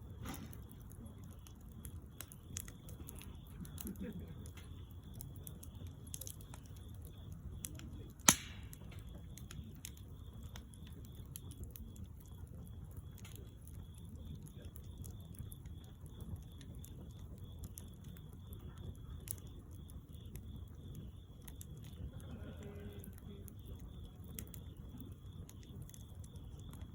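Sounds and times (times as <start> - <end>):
low fire rumble: 0.0 - 26.9
wood fire crackling: 0.0 - 26.9
loud fire pop: 0.2 - 0.7, 8.2 - 9.2.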